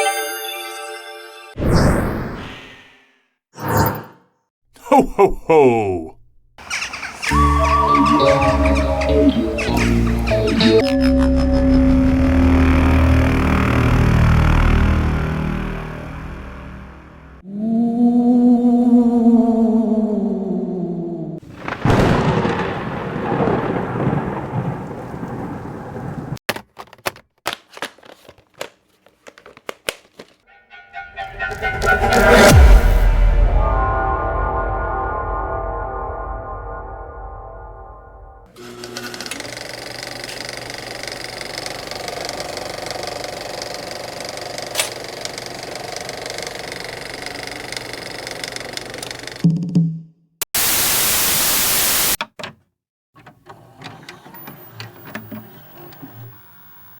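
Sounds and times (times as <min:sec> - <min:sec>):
thunder crack rolling: 0:21.4 - 0:26.4
machine motor running: 0:38.6 - 0:49.4.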